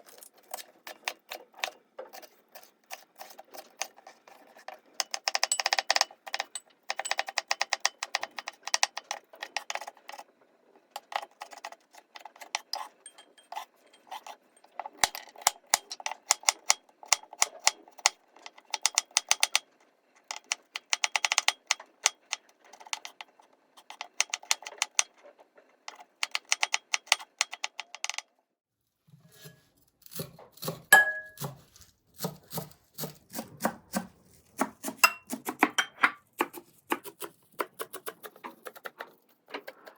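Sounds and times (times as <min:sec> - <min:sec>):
kitchen utensils clinking: 0:12.7 - 0:15.4, 0:30.9 - 0:31.6, 0:35.0 - 0:36.3.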